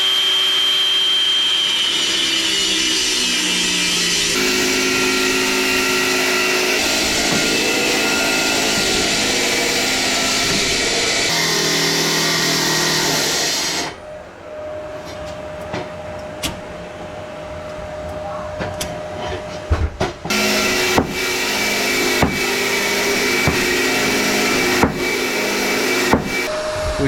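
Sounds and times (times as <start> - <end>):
power tool breaking concrete: 0.2 - 13.9, 20.3 - 26.5
sharp knocks: 19.7 - 26.5.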